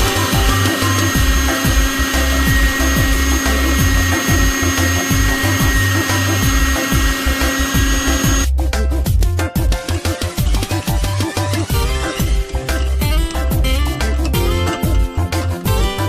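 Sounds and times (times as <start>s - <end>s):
electric meat grinder motor whining: 0.0s - 8.5s.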